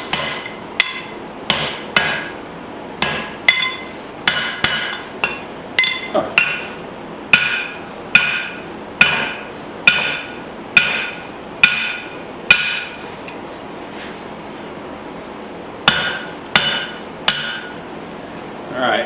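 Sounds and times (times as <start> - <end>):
hammer ringing on anvil: 3.0 - 6.7, 7.3 - 13.0, 15.9 - 17.8.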